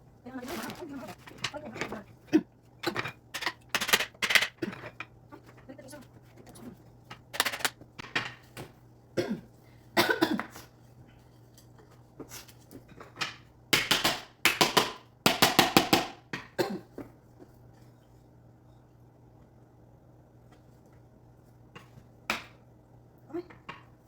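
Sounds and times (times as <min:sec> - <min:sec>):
wooden parts knocking together: 0:02.8 - 0:04.6, 0:07.1 - 0:08.2.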